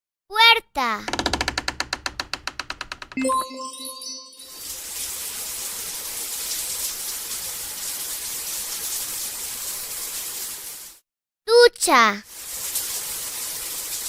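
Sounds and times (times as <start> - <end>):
shower water hissing: 4.5 - 11.0, 12.2 - 14.0.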